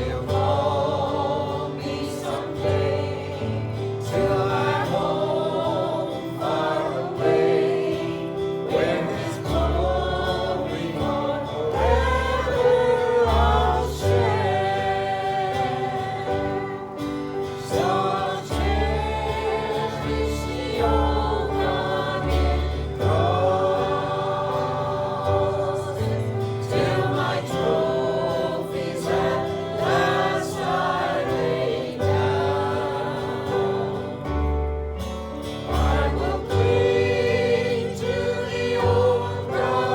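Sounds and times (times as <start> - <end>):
group singing a hymn: 0.0 - 39.9.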